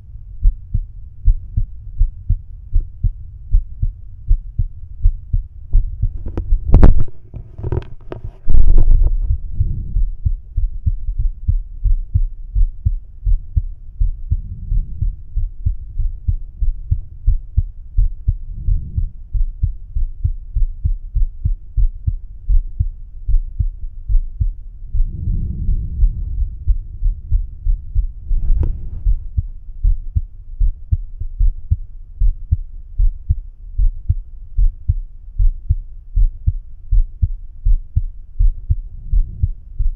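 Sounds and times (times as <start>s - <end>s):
heartbeat through stethoscope: 0.1s - 39.9s
stethoscope rustling against skin: 6.2s - 9.2s.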